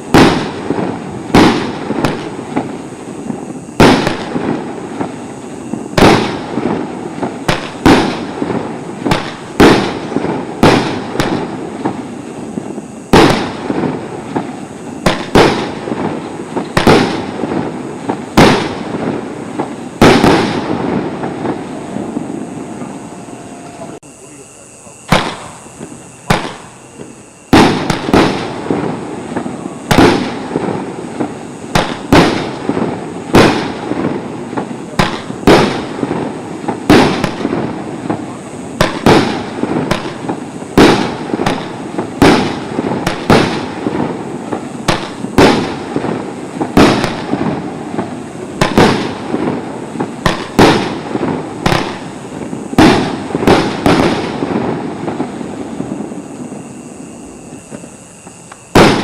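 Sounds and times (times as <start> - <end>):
fireworks bangs with echo: 0.0 - 59.0.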